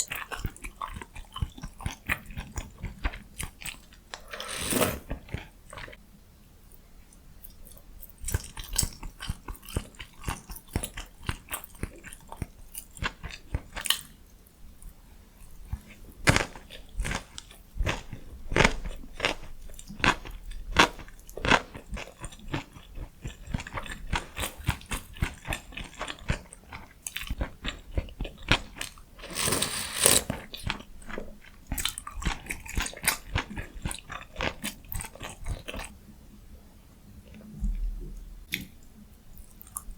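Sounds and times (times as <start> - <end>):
person chewing food: 0.1 - 5.9, 25.4 - 35.9.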